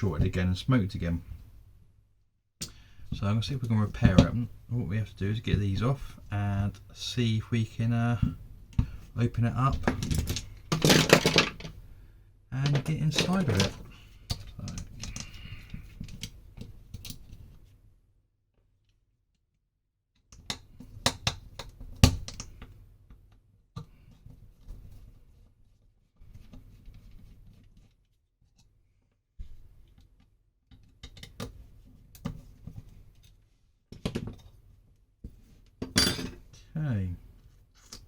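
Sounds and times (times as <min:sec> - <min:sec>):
hand tool scraping plastic: 0:12.6 - 0:16.3.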